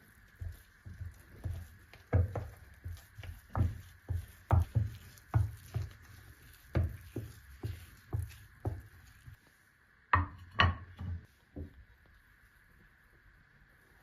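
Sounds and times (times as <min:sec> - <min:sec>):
dull knocks and thumps: 0:00.8 - 0:09.0.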